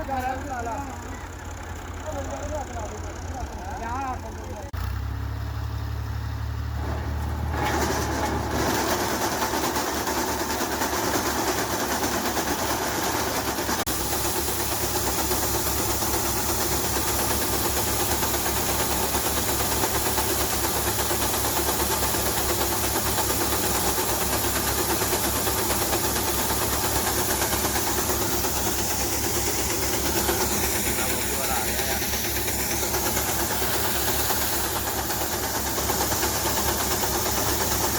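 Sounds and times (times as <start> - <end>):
tractor engine droning: 0.0 - 37.9
maize sheller rushing noise: 7.5 - 37.9.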